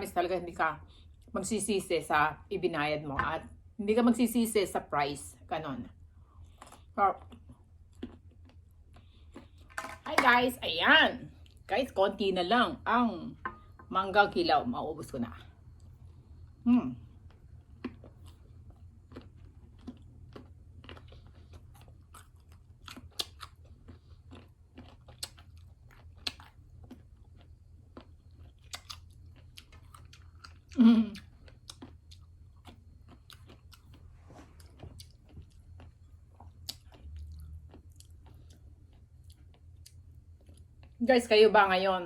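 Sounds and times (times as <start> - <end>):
mango being bitten and chewed: 6.4 - 9.6, 15.7 - 41.0.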